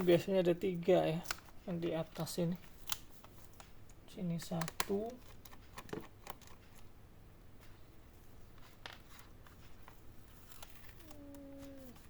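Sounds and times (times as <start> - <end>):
low voice: 11.0 - 12.0.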